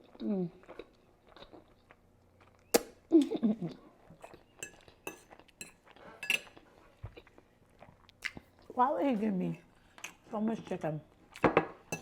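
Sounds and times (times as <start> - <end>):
utensil clinking against dish: 4.6 - 6.6.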